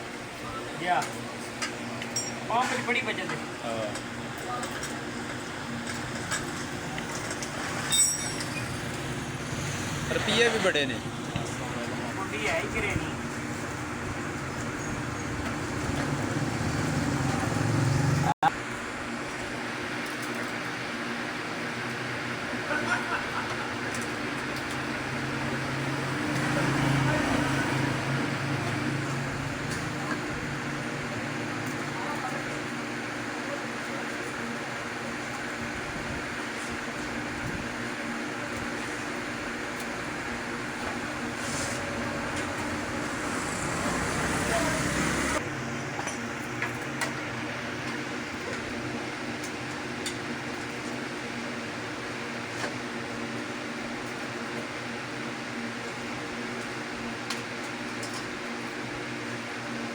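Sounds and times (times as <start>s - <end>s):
motor humming: 39.7s - 45.5s.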